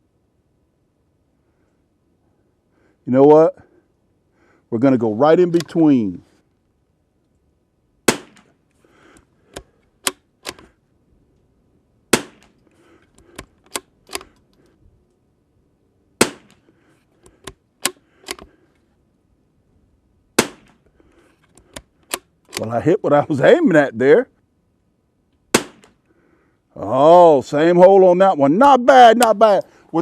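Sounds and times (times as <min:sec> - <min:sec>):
rifle shots: 0:08.0 - 0:08.5, 0:12.1 - 0:12.6, 0:16.2 - 0:16.6, 0:20.4 - 0:20.8, 0:25.5 - 0:26.0
rifle bolt clicks: 0:09.1 - 0:10.8, 0:12.2 - 0:14.7, 0:16.2 - 0:18.6, 0:21.4 - 0:22.7.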